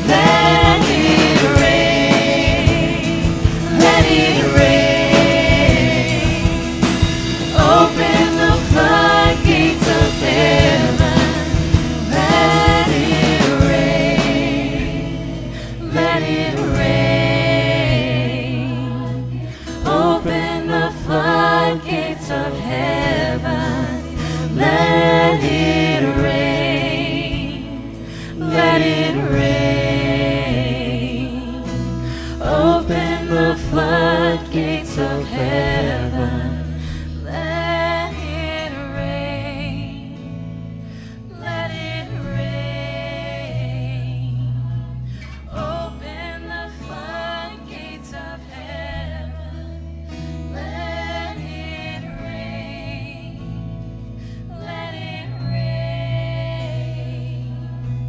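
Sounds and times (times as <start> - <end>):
busy percussion: 0.0 - 18.6
voices singing: 0.0 - 40.4, 41.2 - 58.0
band with low bass: 0.0 - 58.0.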